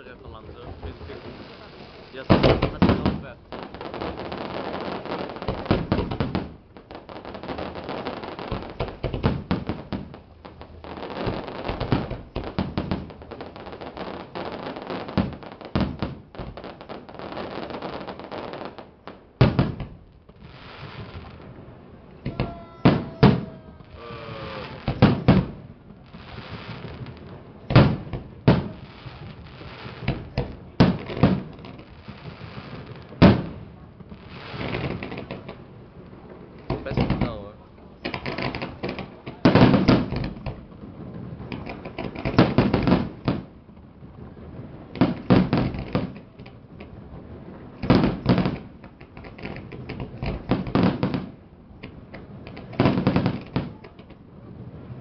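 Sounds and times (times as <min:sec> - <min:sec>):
fireworks booming and crackling: 0:00.0 - 0:55.0
falling firework whistles: 0:22.2 - 0:25.5.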